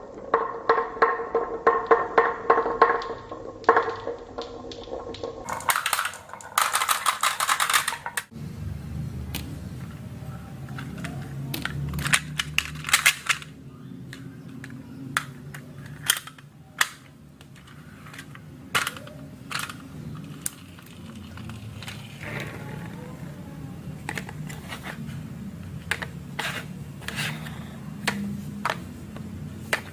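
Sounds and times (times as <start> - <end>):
marbles rolling down a marble run: 0.0 - 8.3, 17.5 - 24.7
marbles clicking on track: 0.1 - 8.3.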